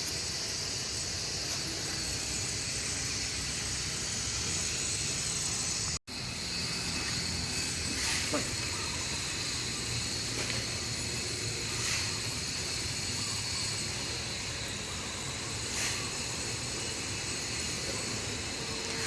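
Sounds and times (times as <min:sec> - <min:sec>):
background hiss: 0:00.0 - 0:19.0.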